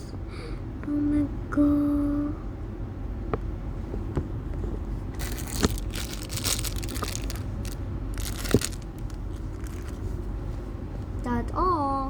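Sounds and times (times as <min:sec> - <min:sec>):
plastic wrapper crinkling: 0:05.2 - 0:10.1.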